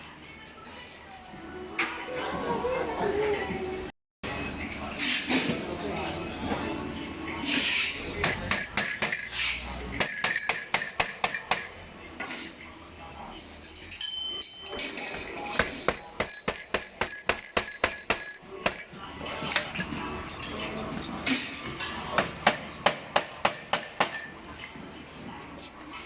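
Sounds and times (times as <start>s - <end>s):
metal parts tapping and clinking: 13.8s - 18.9s.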